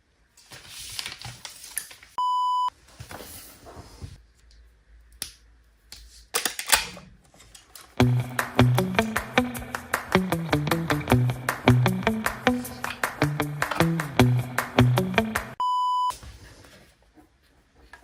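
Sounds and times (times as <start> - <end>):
music with a beat: 8.0 - 15.6
short electronic beep: 15.6 - 16.1.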